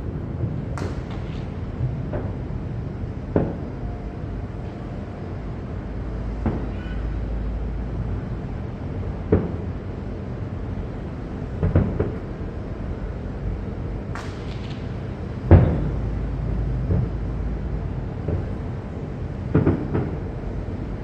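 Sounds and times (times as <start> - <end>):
distant fireworks bangs: 0.0 - 5.3, 5.9 - 7.4, 11.2 - 21.0
steady low rumble: 0.0 - 21.0.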